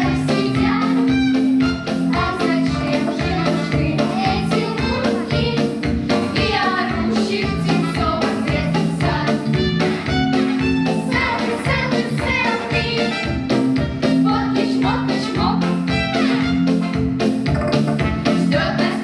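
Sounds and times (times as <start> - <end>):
backing track with steady beat: 0.0 - 19.0
group of voices singing: 11.0 - 13.2.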